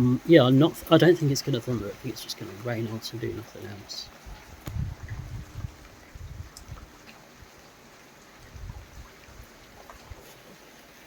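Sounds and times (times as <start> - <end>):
faint drip ticks: 0.2 - 10.4
low rumbles on microphone: 4.2 - 6.9, 8.4 - 10.2.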